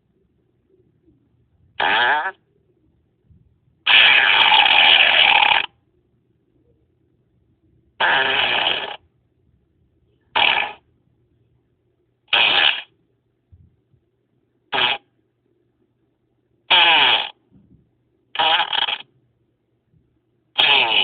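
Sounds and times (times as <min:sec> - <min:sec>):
fart sounds: 0:01.8 - 0:02.5, 0:03.9 - 0:05.8, 0:08.0 - 0:09.0, 0:10.3 - 0:10.8, 0:12.3 - 0:12.9, 0:14.7 - 0:15.1, 0:16.7 - 0:17.4, 0:18.4 - 0:19.1, 0:20.6 - 0:21.0.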